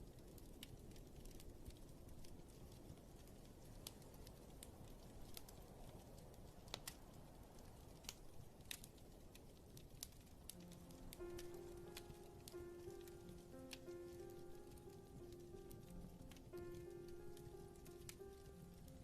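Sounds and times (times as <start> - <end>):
fireplace crackles and pops: 0.0 - 19.0
soft piano notes: 10.4 - 19.0.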